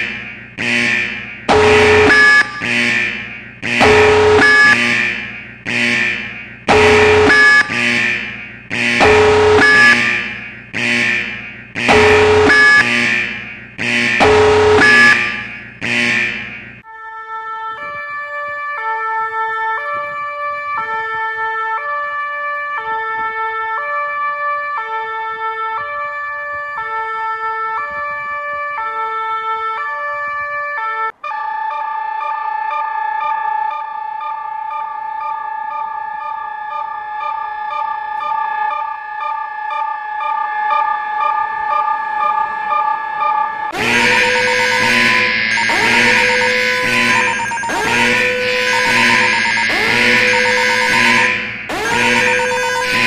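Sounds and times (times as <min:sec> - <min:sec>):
harsh alarm with rising pitches: 0:00.0 - 0:16.8, 0:31.2 - 0:53.0
two-pitch alarm tone: 0:00.0 - 0:16.9, 0:31.2 - 0:53.0
steady held chord of tones: 0:43.9 - 0:52.6.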